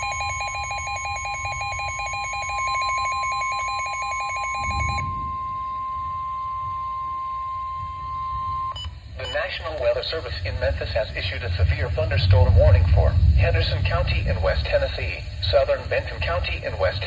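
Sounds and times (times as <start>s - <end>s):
electronic alarm beeping rapidly: 0.0s - 9.4s
steady high warning tone: 0.0s - 17.0s.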